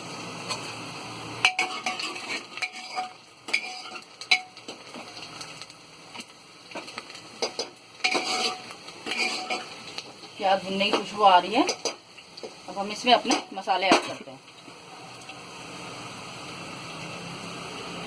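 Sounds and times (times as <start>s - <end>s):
onion sizzling in hot oil: 0.0s - 18.0s
utensil scraping and clinking pan: 1.4s - 5.1s, 6.8s - 9.8s.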